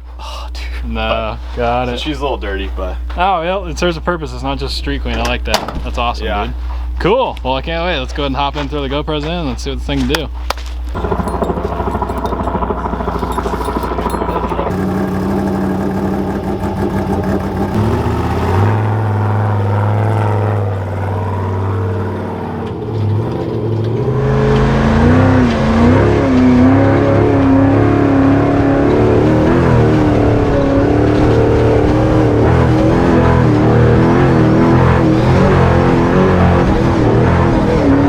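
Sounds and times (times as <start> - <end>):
truck engine revving: 11.0 - 38.0.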